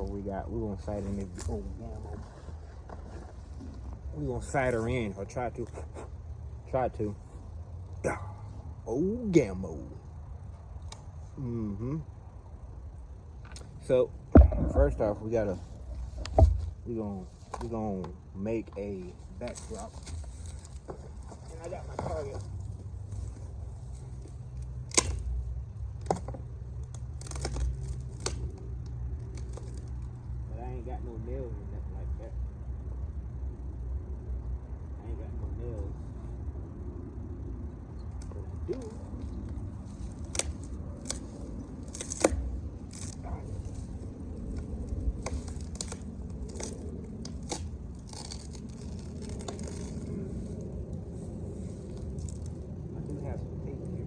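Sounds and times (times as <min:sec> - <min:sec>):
tape tearing and crinkling: 0:00.0 - 0:05.9, 0:18.9 - 0:30.4, 0:38.2 - 0:53.2
handling rustling: 0:00.0 - 0:06.4, 0:13.4 - 0:30.2
steady low rumble: 0:00.0 - 0:54.0.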